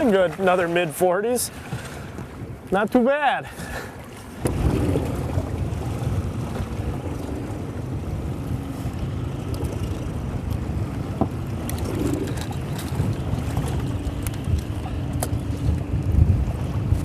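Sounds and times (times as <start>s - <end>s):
wind buffeting microphone: 4.3s - 17.0s.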